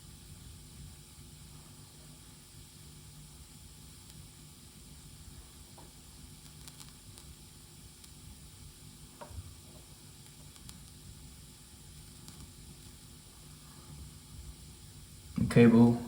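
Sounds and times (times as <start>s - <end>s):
faint hiss and hum: 0.0s - 16.0s
sharp crackles and pops: 5.7s - 8.5s, 9.1s - 13.1s.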